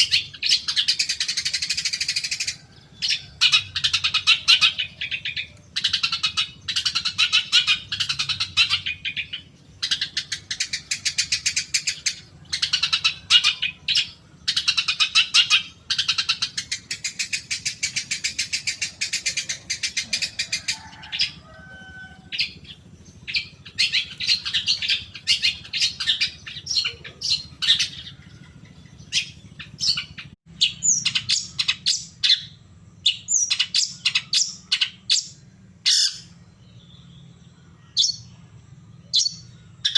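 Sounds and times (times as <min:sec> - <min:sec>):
bird fast chattering trills: 0:00.0 - 0:36.4
bird down-slurred calls: 0:00.0 - 0:39.9.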